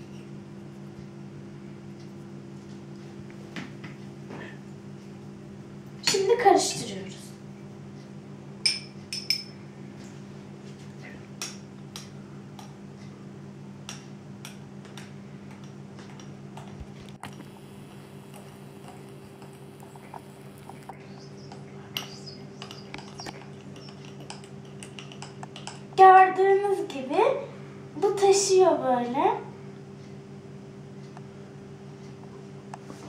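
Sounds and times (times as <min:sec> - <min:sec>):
steady low hum: 0:00.0 - 0:33.0
spoon clinking against glass: 0:08.6 - 0:09.5.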